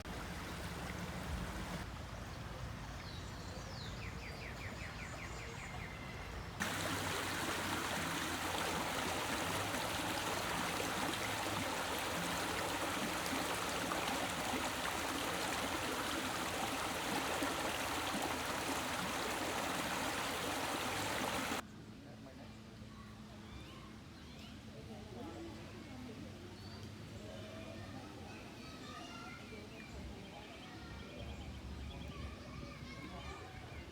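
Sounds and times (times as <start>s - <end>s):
stream water over rocks: 0.0s - 3.5s, 4.8s - 21.6s.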